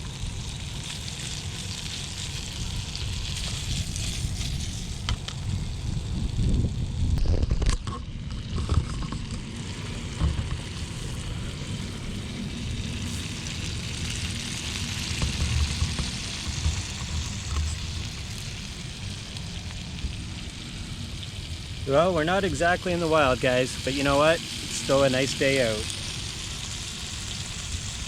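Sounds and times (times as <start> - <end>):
steady hiss: 0.0 - 7.2, 8.4 - 28.0
wind buffeting microphone: 2.2 - 14.1.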